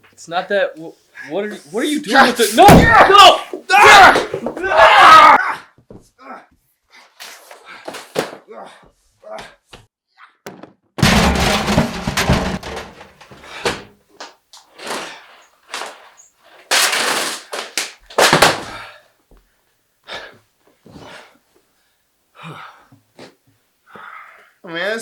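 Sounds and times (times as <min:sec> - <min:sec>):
heavy thuds and knocks: 0:10.5 - 0:13.9
loud crash: 0:11.0 - 0:13.3.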